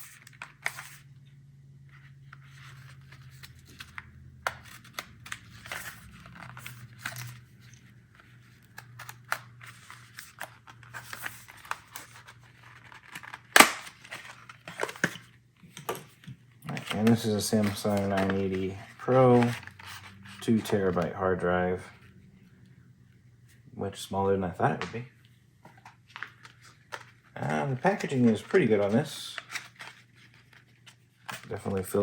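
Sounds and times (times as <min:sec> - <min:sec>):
packaging crinkling: 0:02.4 - 0:15.4, 0:16.6 - 0:21.3
packaging tearing: 0:08.7 - 0:15.2.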